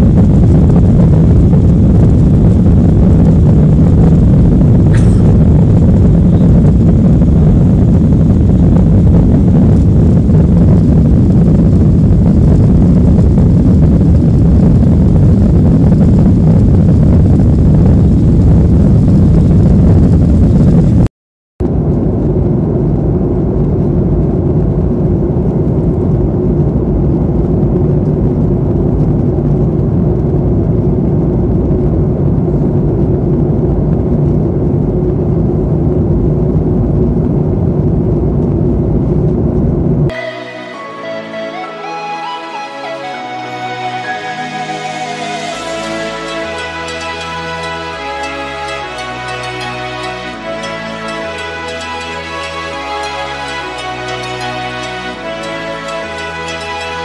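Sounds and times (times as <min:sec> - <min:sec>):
airliner cabin roar: 0:00.0 - 0:57.0
steady hum: 0:00.0 - 0:57.0.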